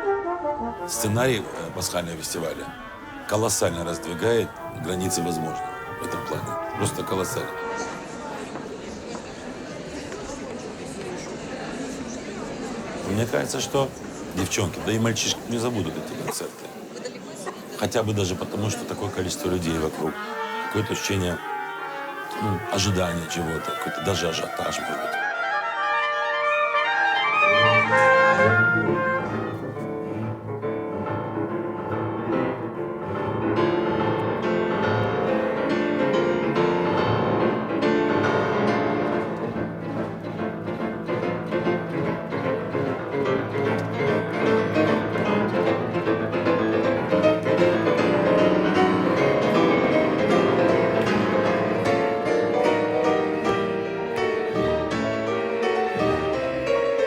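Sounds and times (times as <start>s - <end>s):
piano: 0.0s - 8.5s, 13.0s - 16.8s, 17.6s - 57.0s
bowed strings: 27.4s - 57.0s.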